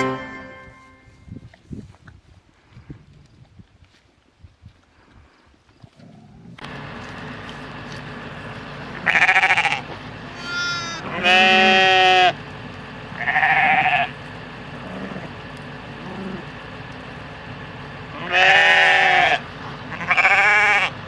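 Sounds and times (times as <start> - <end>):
farm animal bleating: 8.8 - 12.4, 13.1 - 16.6, 18.1 - 21.0.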